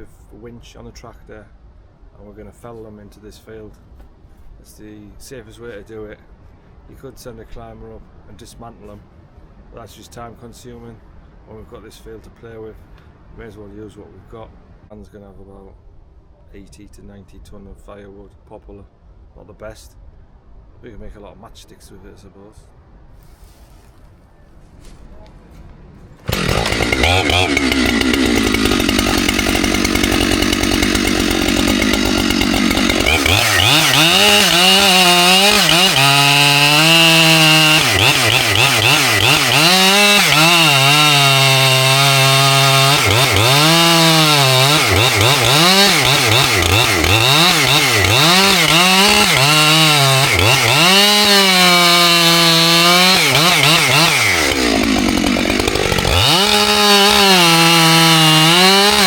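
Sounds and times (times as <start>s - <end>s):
chainsaw cutting wood: 26.2s - 59.0s.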